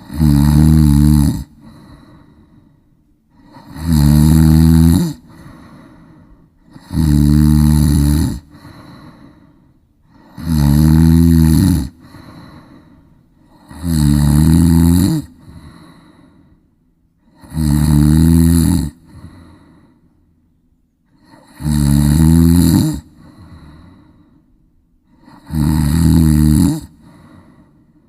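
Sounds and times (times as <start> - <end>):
loud snoring: 0.0 - 2.6, 3.3 - 9.5, 10.1 - 16.3, 17.2 - 19.6, 21.2 - 24.0, 25.1 - 27.6
soft breath out: 1.6 - 3.6, 5.2 - 6.8, 8.5 - 10.4, 12.0 - 13.6, 15.4 - 16.8, 19.0 - 20.3, 23.2 - 25.4, 26.9 - 28.0.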